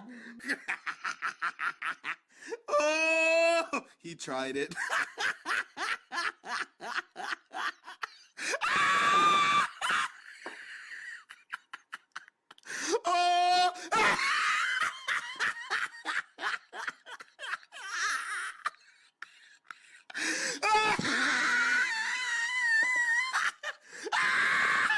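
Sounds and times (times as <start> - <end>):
people laughing hard: 0.3 - 2.3, 4.7 - 12.6, 13.8 - 24.9
loud yell: 13.0 - 14.4.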